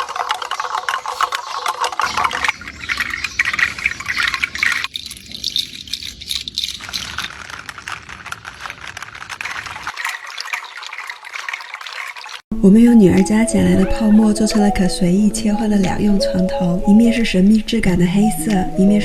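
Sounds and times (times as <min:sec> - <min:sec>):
shell chimes clattering: 0:00.7 - 0:07.4.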